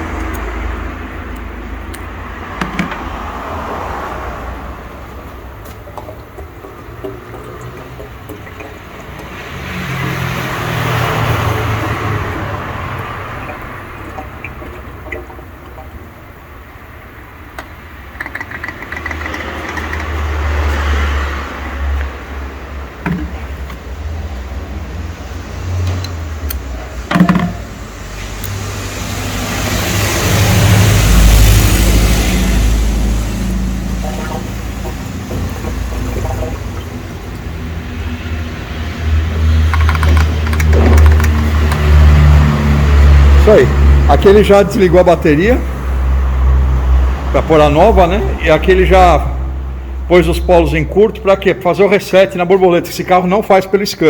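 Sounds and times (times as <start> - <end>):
car engine rumble: 0.0 - 48.3.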